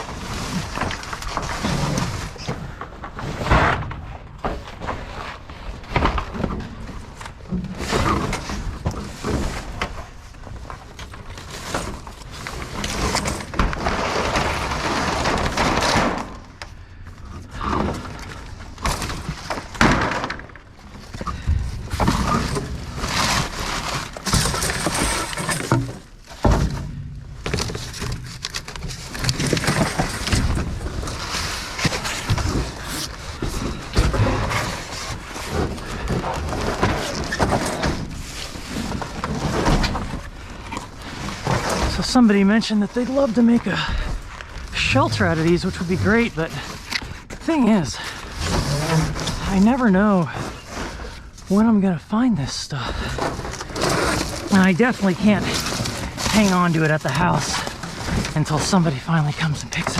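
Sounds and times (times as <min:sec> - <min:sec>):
scraping: 0:31.6 - 0:33.7.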